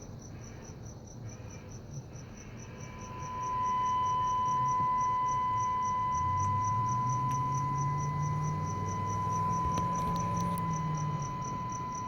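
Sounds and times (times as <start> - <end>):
low hum: 1.6 - 12.0
high-pitched whine: 2.6 - 12.0.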